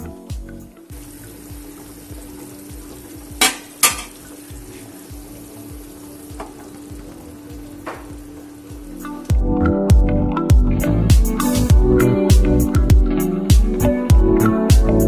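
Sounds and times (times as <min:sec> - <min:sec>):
food sizzling in hot oil: 0:00.9 - 0:09.5.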